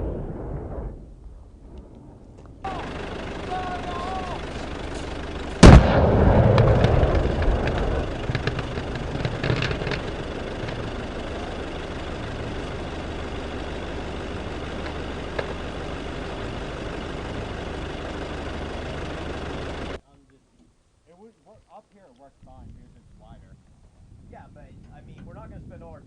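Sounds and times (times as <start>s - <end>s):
rumbling explosion echo: 0.0s - 3.4s, 5.5s - 19.9s
low background hum: 0.0s - 26.0s
sharp cracks and pops: 5.6s - 12.7s, 14.8s - 15.6s.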